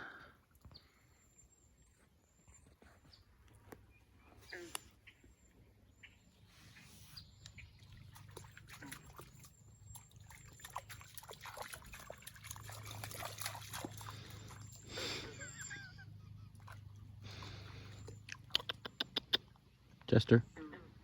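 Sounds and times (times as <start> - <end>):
small water splashes: 7.4 - 15.6, 16.5 - 19.8
water trickling: 7.4 - 16.0.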